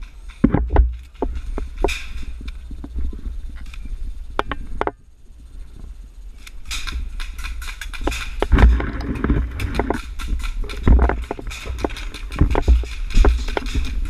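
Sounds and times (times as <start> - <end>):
irregular clicks and knocks: 0.0 - 3.0, 6.4 - 14.0
low rumble: 0.0 - 14.0
heavy thumps: 6.8 - 14.0.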